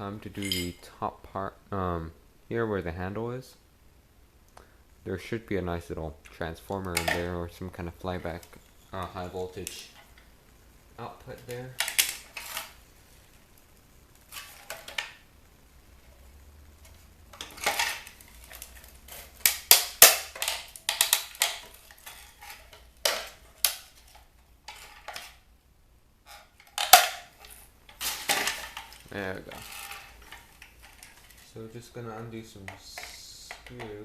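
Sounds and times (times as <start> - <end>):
plastic and metal parts clattering: 0.4 - 0.8, 6.8 - 7.3, 11.4 - 12.8, 14.3 - 15.2, 16.8 - 25.4, 26.3 - 31.6, 32.6 - 34.0.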